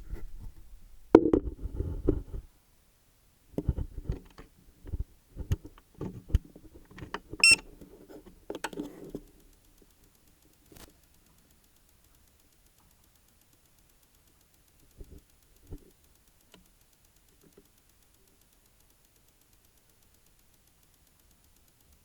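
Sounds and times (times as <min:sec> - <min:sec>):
high-pitched electronic ticking: 0:09.3 - 0:22.0.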